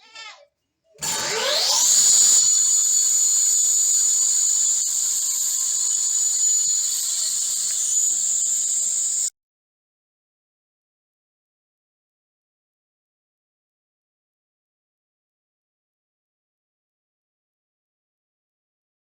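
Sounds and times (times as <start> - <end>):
table saw motor whining: 1.0 - 9.3.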